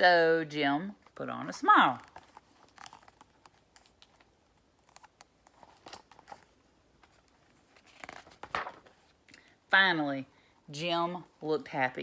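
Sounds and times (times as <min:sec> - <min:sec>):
paper page rustling and turning: 0:01.6 - 0:09.2.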